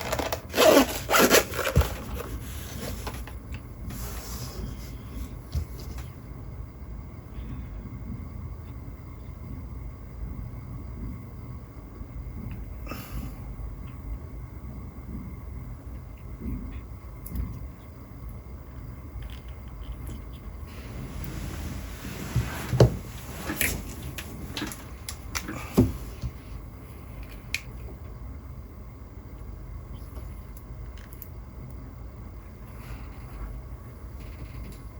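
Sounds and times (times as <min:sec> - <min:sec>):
packaging rasping pulls: 0:00.0 - 0:03.4
packaging rustling: 0:00.0 - 0:03.5.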